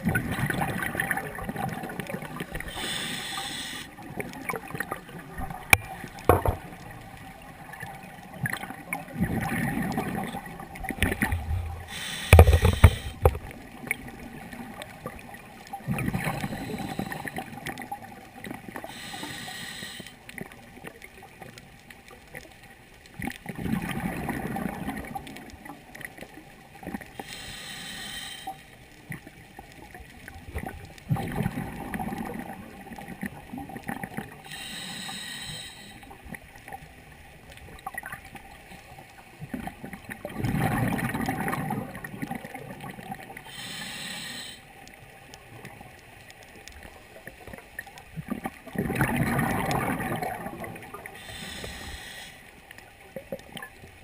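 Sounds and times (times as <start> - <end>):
regulator inhale hiss: 2.6 - 4.0, 11.8 - 13.4, 16.2 - 17.6, 18.8 - 20.3, 27.2 - 28.8, 34.4 - 36.2, 43.4 - 44.9, 51.1 - 52.7.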